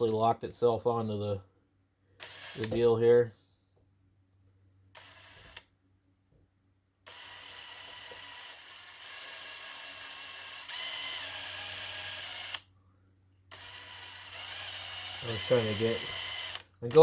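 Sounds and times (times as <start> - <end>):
electric drill drilling: 2.2 - 2.8, 5.0 - 5.6, 7.1 - 12.7, 13.5 - 17.0.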